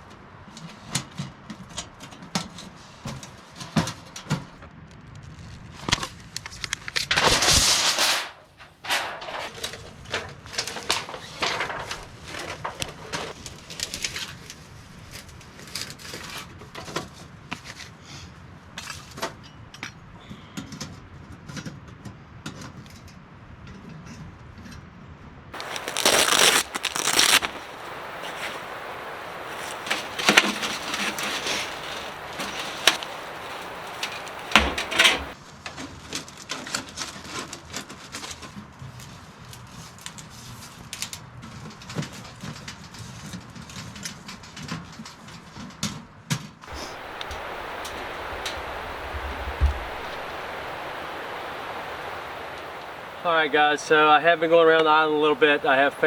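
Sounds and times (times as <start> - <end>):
leaves rustling: 5.2 - 16.6, 25.6 - 41.2, 46.7 - 56.0
footsteps crunching dry leaves: 25.6 - 35.4
twigs snapping: 25.6 - 35.4.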